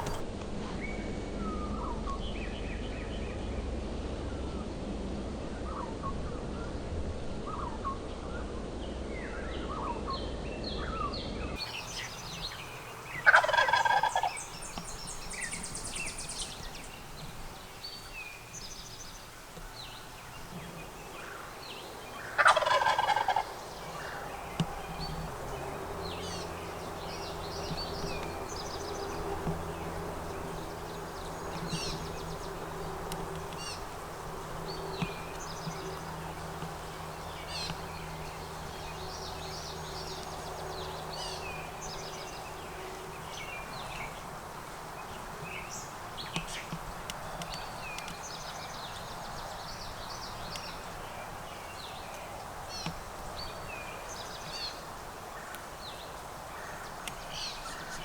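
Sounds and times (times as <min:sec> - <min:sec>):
songbirds chirping: 0:00.0 - 0:00.2, 0:08.0 - 0:58.0
turkey gobbling: 0:00.0 - 0:00.2, 0:11.6 - 0:15.0, 0:20.8 - 0:25.6
faint steady hum: 0:11.6 - 0:58.0.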